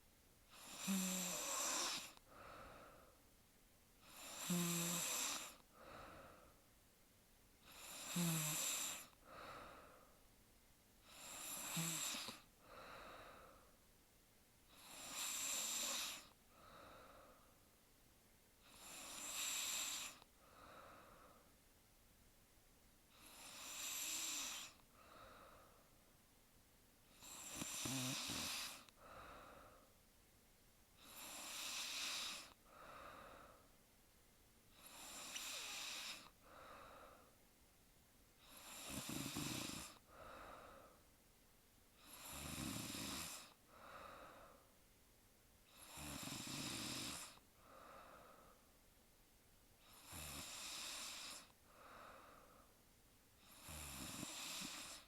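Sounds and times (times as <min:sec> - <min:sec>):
woman snoring: 0:00.5 - 0:02.2, 0:04.0 - 0:06.0, 0:07.6 - 0:09.6, 0:11.0 - 0:13.4, 0:14.7 - 0:16.4, 0:18.6 - 0:21.0, 0:23.1 - 0:24.8, 0:27.1 - 0:29.8, 0:31.0 - 0:33.5, 0:34.7 - 0:37.3, 0:38.4 - 0:40.9, 0:42.0 - 0:44.5, 0:45.7 - 0:48.1, 0:49.8 - 0:52.5, 0:53.4 - 0:55.0
soft breath: 0:00.6 - 0:03.3, 0:04.0 - 0:06.8, 0:08.5 - 0:10.4, 0:11.0 - 0:13.9, 0:15.7 - 0:17.7, 0:19.8 - 0:21.6, 0:23.1 - 0:26.1, 0:27.1 - 0:30.0, 0:31.0 - 0:33.8, 0:34.7 - 0:37.4, 0:38.4 - 0:41.1, 0:43.3 - 0:44.8, 0:47.2 - 0:48.8, 0:50.9 - 0:52.8.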